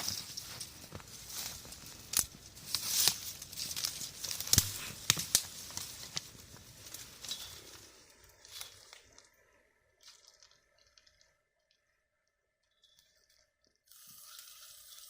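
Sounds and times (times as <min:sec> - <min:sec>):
footsteps crunching in snow: 0:00.0 - 0:09.0.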